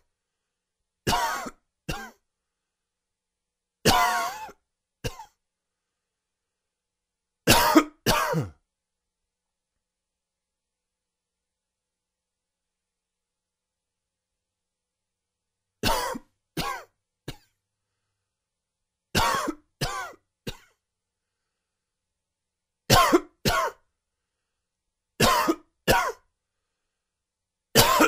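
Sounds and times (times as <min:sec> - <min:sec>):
man coughing: 0:01.1 - 0:02.2, 0:03.9 - 0:05.4, 0:07.5 - 0:08.6, 0:15.8 - 0:17.5, 0:19.2 - 0:20.8, 0:22.9 - 0:23.8, 0:25.2 - 0:26.2, 0:27.8 - 0:28.0.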